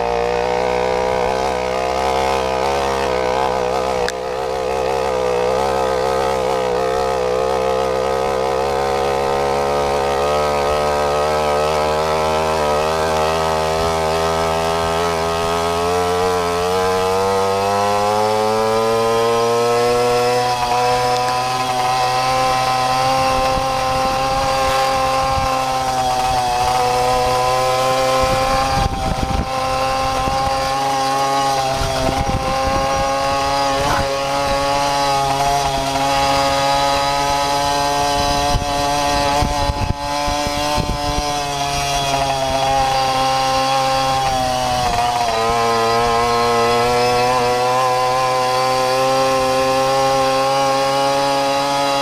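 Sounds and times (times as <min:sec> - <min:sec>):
moped engine running hard: 0:00.0 - 0:52.0.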